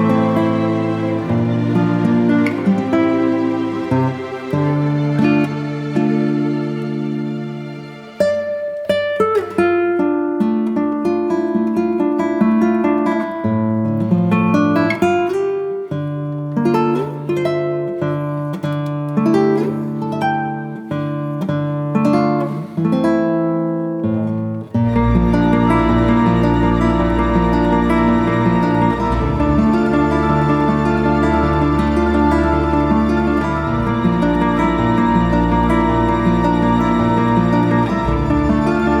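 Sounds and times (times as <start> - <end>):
acoustic guitar picking: 0.0 - 39.0.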